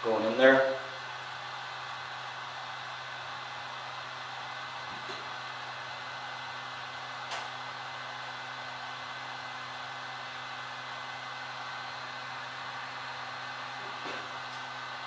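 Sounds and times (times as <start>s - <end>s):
heat gun fan humming: 0.0s - 15.0s
sharp click: 7.3s - 7.5s.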